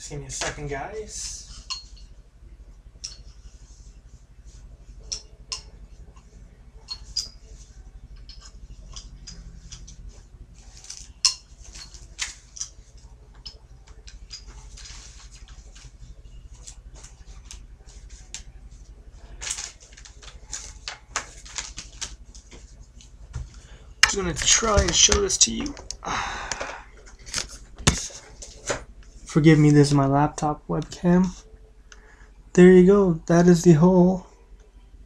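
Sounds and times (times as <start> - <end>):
packaging rustling: 14.0 - 18.6, 19.2 - 23.2.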